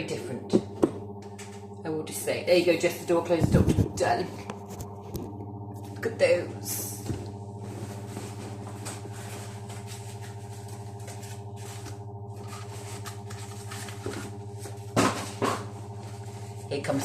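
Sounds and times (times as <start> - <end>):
extractor fan humming: 0.0 - 17.0.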